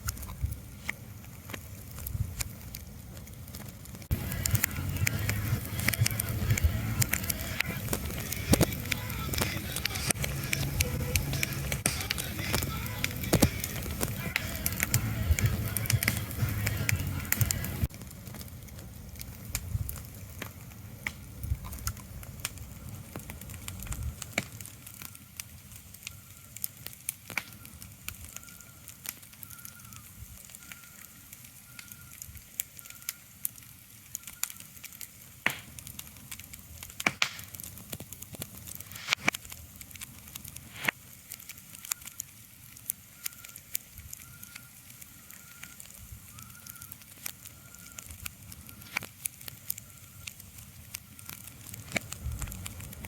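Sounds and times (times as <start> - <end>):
sharp crackles and pops: 0.0 - 53.0
low rumble: 4.1 - 18.7.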